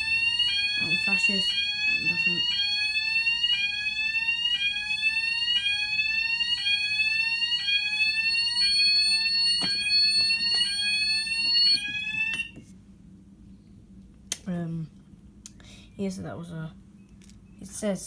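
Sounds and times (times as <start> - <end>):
higher alarm tone: 0.0 - 12.6
rising sweeping alarm tone: 0.0 - 12.6
steady high-pitched alarm tone: 0.0 - 12.6.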